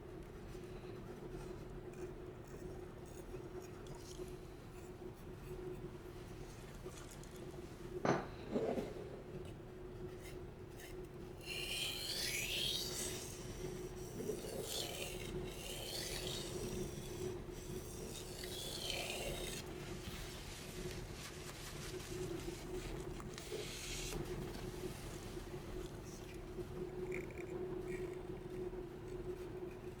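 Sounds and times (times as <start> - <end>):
knife rasping on whetstone: 1.9 - 5.9, 10.1 - 20.3.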